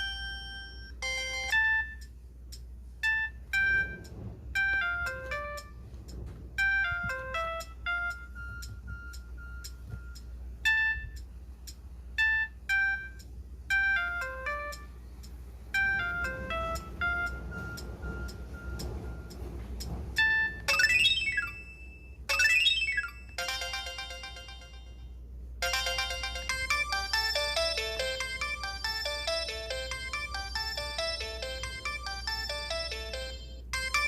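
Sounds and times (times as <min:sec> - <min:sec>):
phone ringtone melodies: 0:00.0 - 0:02.1, 0:03.0 - 0:05.9, 0:06.6 - 0:11.2, 0:12.2 - 0:15.0, 0:15.7 - 0:19.4, 0:20.2 - 0:34.0.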